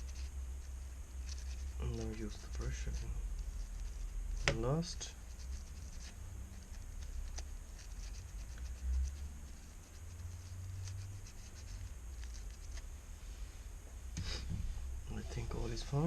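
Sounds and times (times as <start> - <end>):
small brush scratching in port: 0.0 - 13.5, 15.1 - 16.0
soft thump: 14.2 - 14.8.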